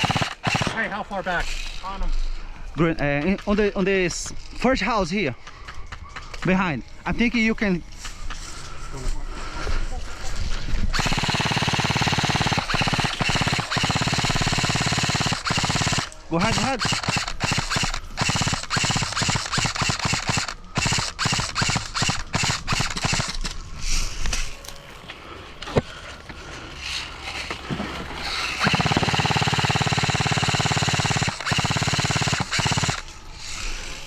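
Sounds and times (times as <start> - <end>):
airsoft guns firing: 0.0 - 1.2, 11.0 - 23.6, 28.2 - 33.1.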